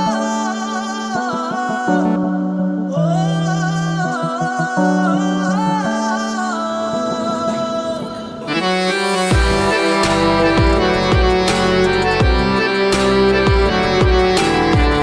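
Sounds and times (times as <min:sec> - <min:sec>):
ringtone melody with singing: 0:00.0 - 0:15.0
music beat: 0:07.0 - 0:15.0.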